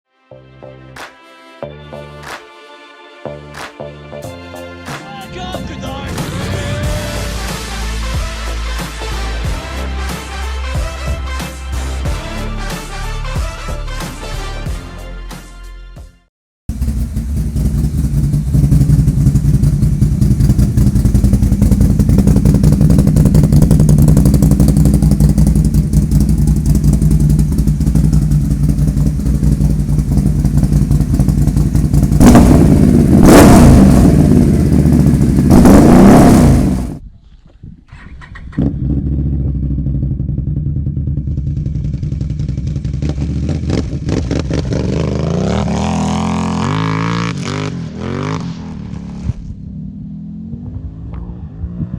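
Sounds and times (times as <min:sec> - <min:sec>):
atv engine idling and revving: 0:05.4 - 0:12.7, 0:16.7 - 0:37.0, 0:38.4 - 0:51.9.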